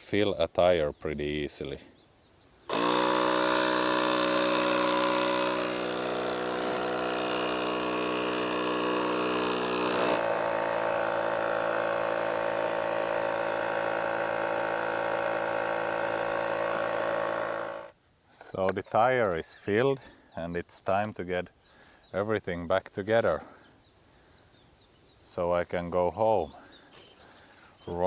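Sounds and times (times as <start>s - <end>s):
electric tire compressor running: 2.7s - 17.9s.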